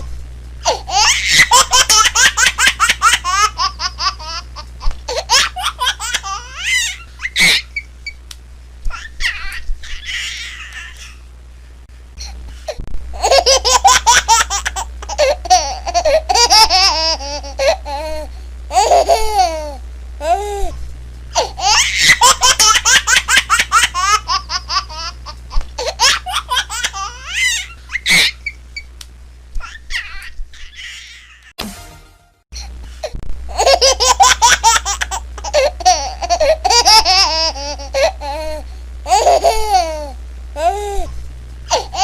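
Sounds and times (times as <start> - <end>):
baby laughing: 0.6 - 7.9, 8.9 - 11.2, 13.2 - 20.4, 21.4 - 28.6, 29.6 - 31.5, 33.5 - 40.9, 41.7 - 42.0.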